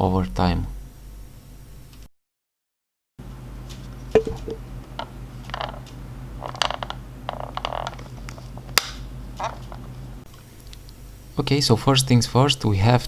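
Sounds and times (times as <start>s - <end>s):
plastic headphones creaking and clicking: 5.5s - 9.9s.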